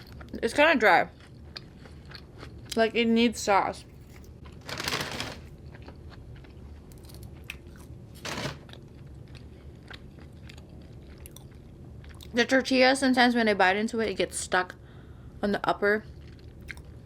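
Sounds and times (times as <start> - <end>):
person chewing food: 0.0 - 0.4, 1.1 - 2.8, 5.5 - 8.0, 8.6 - 12.4, 16.1 - 17.0.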